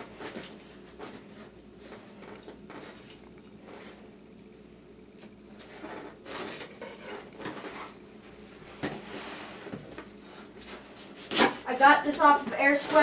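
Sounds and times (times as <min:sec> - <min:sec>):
rustling and scraping of box: 0:05.6 - 0:08.0.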